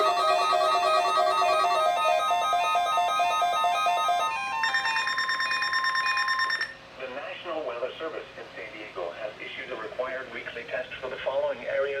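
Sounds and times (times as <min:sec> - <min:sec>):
electronic keyboard notes: 0:00.0 - 0:06.7
steady high tone: 0:00.0 - 0:06.8.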